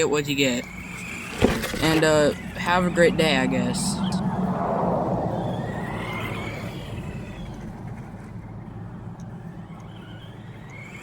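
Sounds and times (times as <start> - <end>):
radio-controlled car motor whining: 0.0 - 4.3, 5.3 - 11.0.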